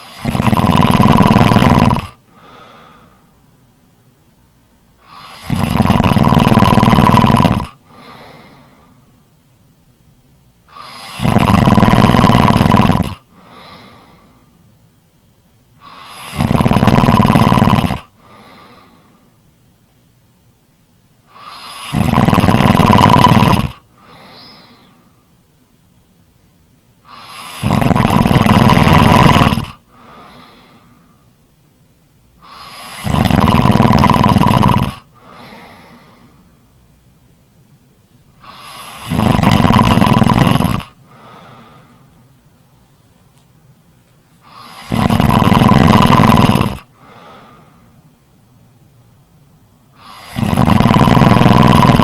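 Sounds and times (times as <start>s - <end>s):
loud snores: 0.0s - 3.0s, 5.0s - 8.7s, 10.7s - 14.3s, 15.8s - 19.0s, 21.3s - 25.0s, 27.0s - 30.9s, 32.4s - 36.3s, 38.4s - 41.8s, 44.4s - 47.6s, 49.9s - 52.0s
faint breath: 2.2s - 3.5s, 7.8s - 9.2s, 13.2s - 14.7s, 18.1s - 19.4s, 23.8s - 25.4s, 29.8s - 31.4s, 35.0s - 36.7s, 41.0s - 42.4s, 46.6s - 48.1s.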